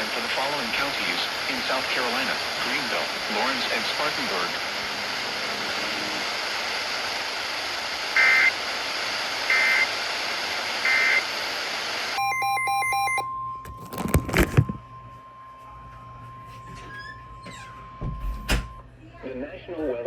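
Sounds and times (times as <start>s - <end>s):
radio static hiss: 0.0s - 12.2s
two-tone data bursts: 8.2s - 8.6s, 9.5s - 9.9s, 10.9s - 11.2s.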